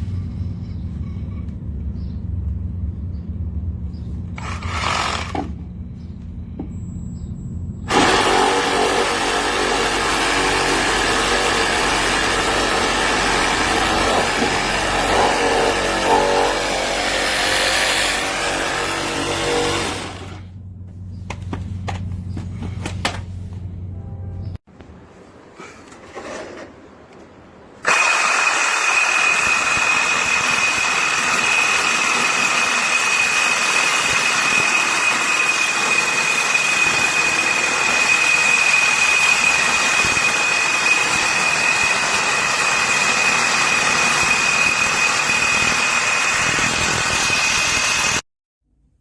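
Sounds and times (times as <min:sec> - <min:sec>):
reciprocating saw whining: 0:07.9 - 0:20.5, 0:27.8 - 0:48.2.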